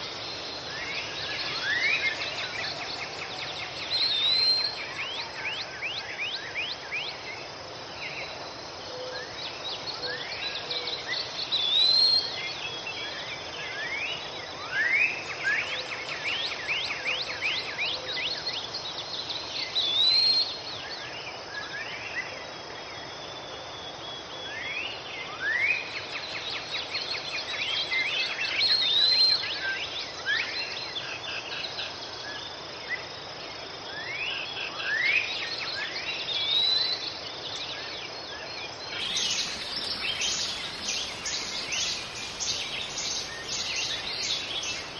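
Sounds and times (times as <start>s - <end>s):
insect hiss: 0.0s - 44.9s
birds whistling: 38.9s - 44.9s.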